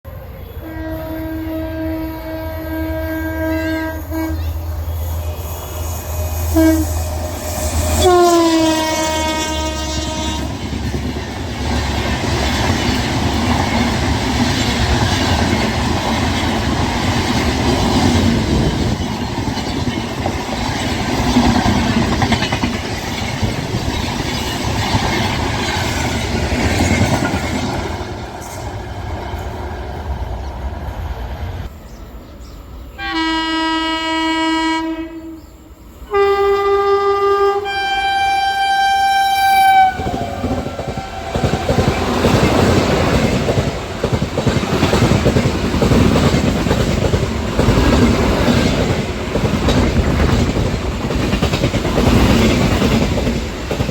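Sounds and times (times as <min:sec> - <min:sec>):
train horn blast: 0:00.6 - 0:04.6, 0:05.6 - 0:10.7, 0:33.0 - 0:35.5, 0:36.1 - 0:42.4
train wheels clattering over rails: 0:10.0 - 0:29.5, 0:40.0 - 0:53.9.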